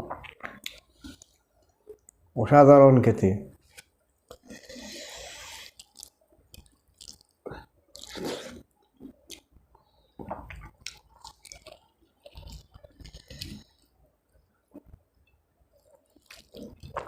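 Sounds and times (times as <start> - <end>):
close-up chewing with wet smacks: 0.1 - 2.1, 5.4 - 13.9, 14.7 - 17.0.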